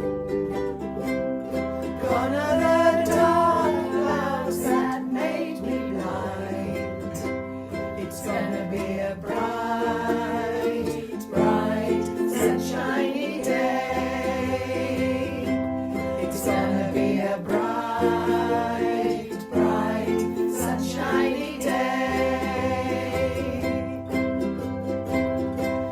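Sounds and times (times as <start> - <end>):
strummed ukulele chords: 0.0 - 25.9
person singing: 1.8 - 25.9.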